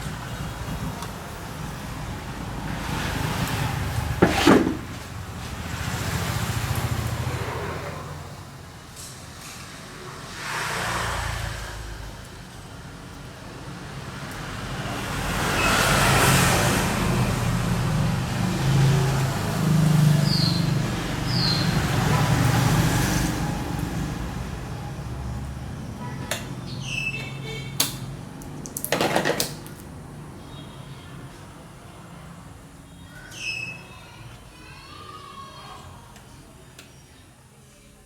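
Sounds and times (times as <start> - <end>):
vehicle passing by: 1.4 - 26.6.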